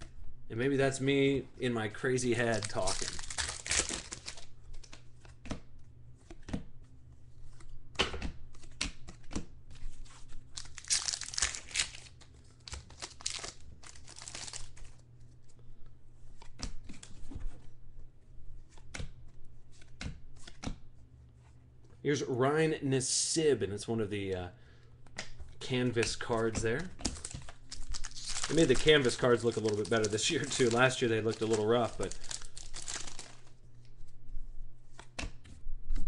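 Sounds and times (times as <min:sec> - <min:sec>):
wrappers tearing and crinkling: 0:02.3 - 0:04.5, 0:10.6 - 0:14.9, 0:26.2 - 0:33.5.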